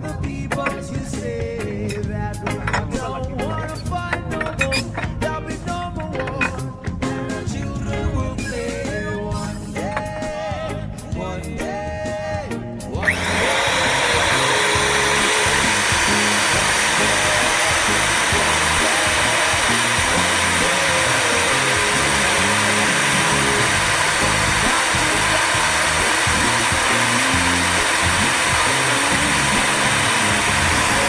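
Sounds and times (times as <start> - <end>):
background music: 0.0 - 31.0
electric motor whirring: 13.0 - 31.0.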